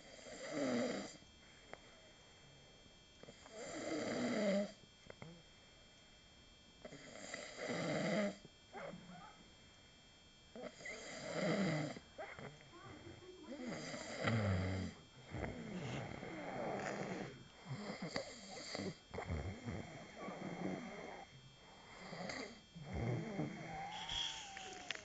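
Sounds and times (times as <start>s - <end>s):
loud snoring: 0.1s - 1.2s, 3.5s - 4.8s, 6.9s - 8.4s, 10.6s - 12.0s, 13.6s - 21.2s, 21.8s - 25.0s
quiet breathing: 11.8s - 25.0s.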